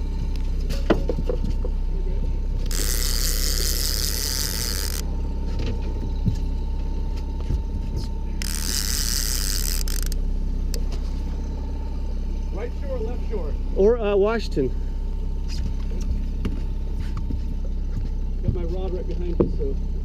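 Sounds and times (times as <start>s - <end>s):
boat engine rumble: 0.0s - 20.0s
fishing reel drag screaming: 2.6s - 5.0s, 8.4s - 10.2s.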